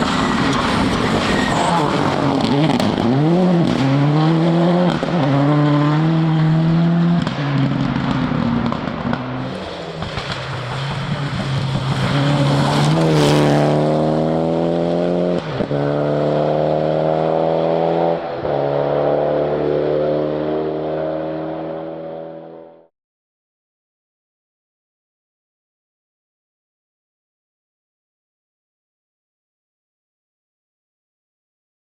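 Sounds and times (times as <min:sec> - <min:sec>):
rally car engine at full throttle: 0:00.0 - 0:22.9.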